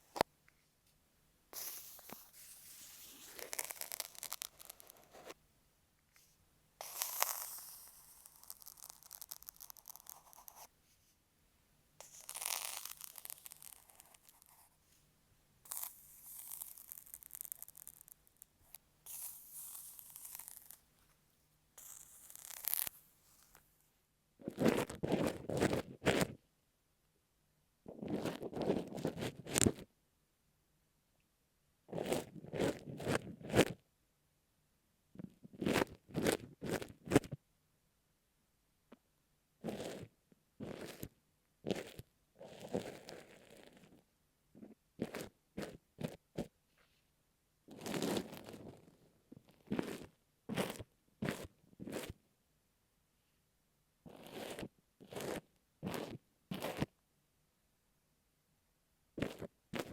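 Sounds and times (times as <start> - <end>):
pins scratching microphone: 1.6 - 5.4, 6.8 - 10.7, 12.0 - 14.8, 15.7 - 20.8, 21.8 - 23.7, 24.4 - 26.4, 27.9 - 29.9.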